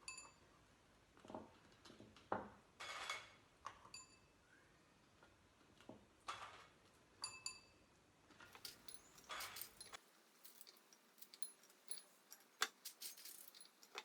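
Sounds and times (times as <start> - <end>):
light clinks on glass dish: 8.6 - 14.0.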